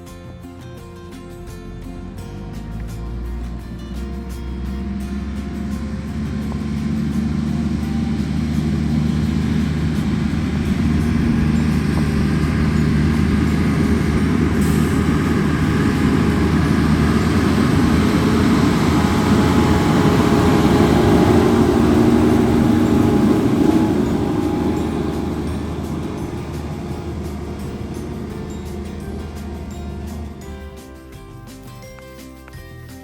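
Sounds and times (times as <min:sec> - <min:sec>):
large vehicle engine rumbling: 0:00.0 - 0:32.5.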